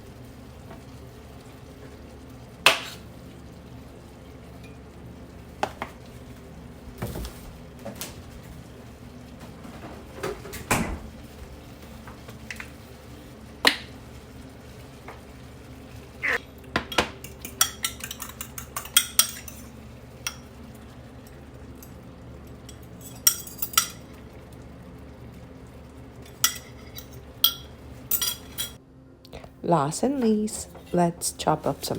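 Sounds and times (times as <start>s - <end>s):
utensil clinking against cookware: 16.8s - 20.5s, 22.7s - 24.1s, 26.2s - 28.8s.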